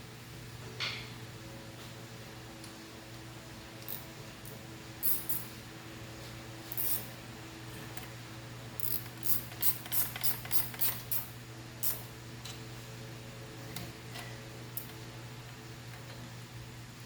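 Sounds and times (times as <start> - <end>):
hand ratchet clicking: 8.8 - 12.0.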